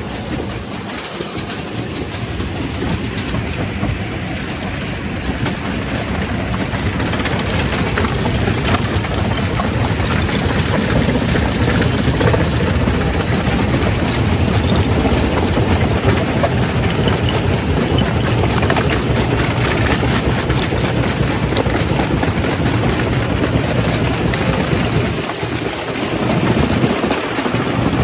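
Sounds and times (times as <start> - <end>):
rock crusher grinding stone: 7.1 - 28.0.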